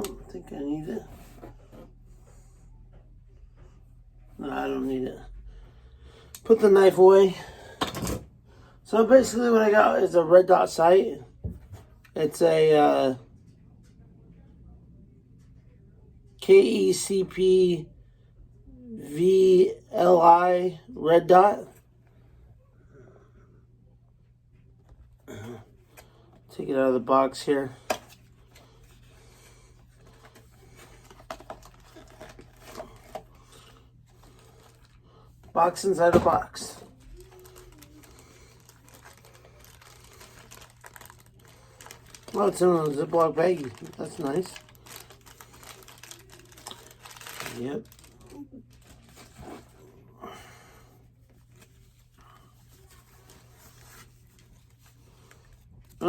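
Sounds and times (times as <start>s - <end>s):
plastic bag rustling: 27.8s - 50.1s.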